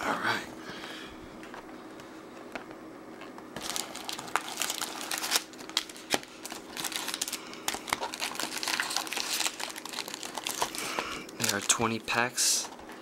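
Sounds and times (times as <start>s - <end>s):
packaging crinkling and snapping: 3.2s - 13.0s.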